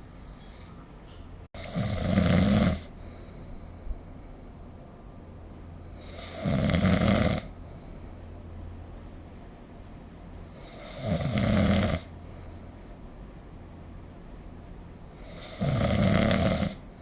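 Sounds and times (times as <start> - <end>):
faint low hum: 0.0 - 17.0
person snoring: 1.6 - 3.2, 6.0 - 7.6, 10.6 - 12.1, 15.2 - 16.8.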